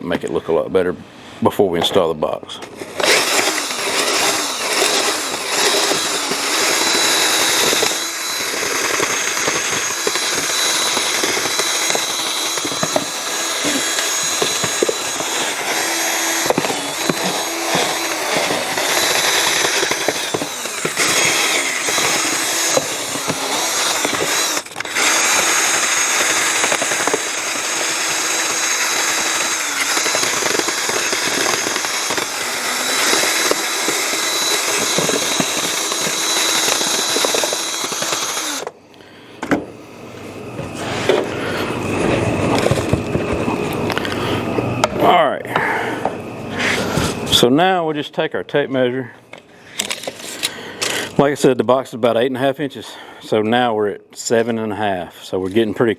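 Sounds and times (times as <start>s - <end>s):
power drill grinding foam: 2.6s - 38.8s, 40.7s - 44.4s.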